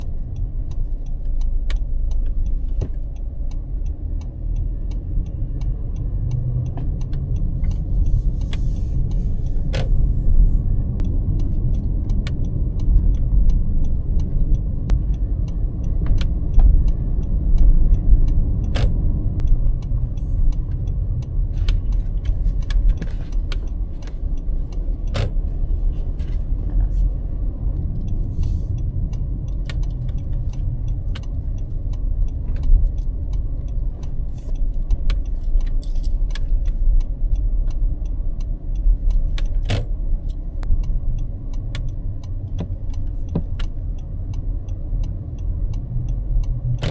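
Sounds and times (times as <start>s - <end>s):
road rumble inside car: 0.0s - 46.9s
steering wheel clicks: 0.0s - 46.9s.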